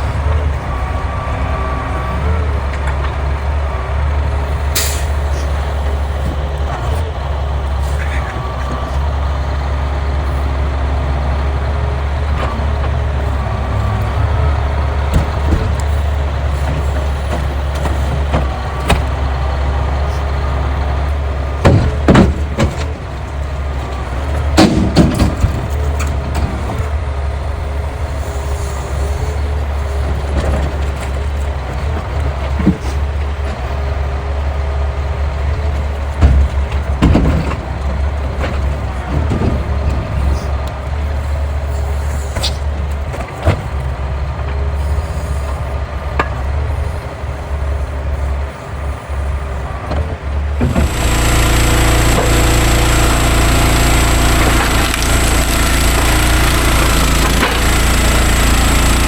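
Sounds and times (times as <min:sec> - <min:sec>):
truck diesel engine running: 0:00.0 - 0:59.0
heavy knocks of logs: 0:15.1 - 0:16.0, 0:21.6 - 0:23.1, 0:24.5 - 0:26.8, 0:36.2 - 0:37.7
loud steady motor noise: 0:44.9 - 0:59.0.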